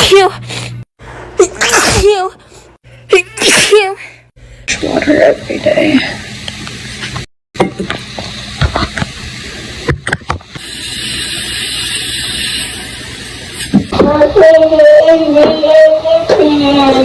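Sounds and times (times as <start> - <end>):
steady hiss: 10.6 - 13.7.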